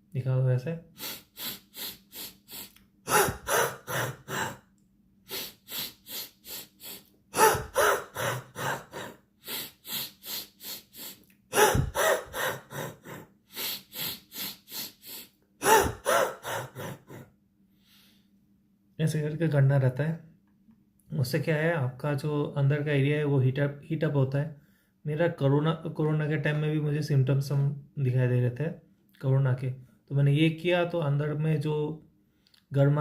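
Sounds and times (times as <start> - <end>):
man breathing hard and fast: 0.9 - 4.6, 5.2 - 18.4.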